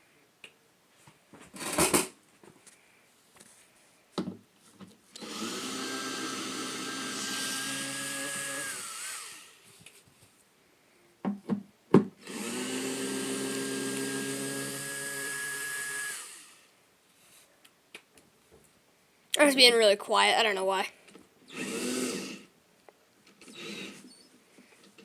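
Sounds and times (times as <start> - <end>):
electric drill whining: 5.2 - 9.7, 12.2 - 16.7, 21.5 - 22.5, 23.4 - 24.3.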